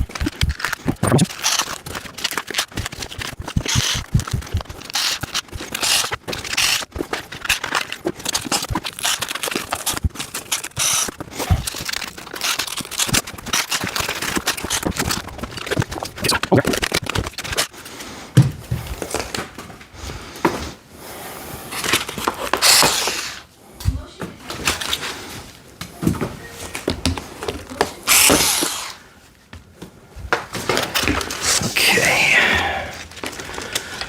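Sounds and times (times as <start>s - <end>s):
packing foam and cardboard crackling: 0.0s - 18.2s, 21.7s - 23.5s, 30.3s - 34.0s.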